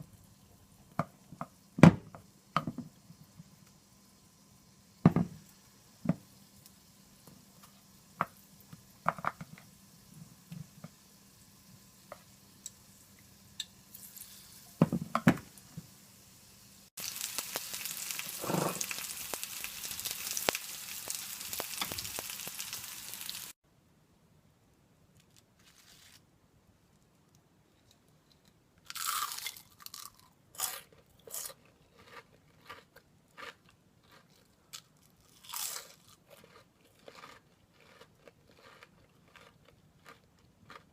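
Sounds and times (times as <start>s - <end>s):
deep-frying sizzle: 0.0s - 23.6s
kitchen knocks and taps: 5.1s - 5.4s, 14.8s - 15.5s.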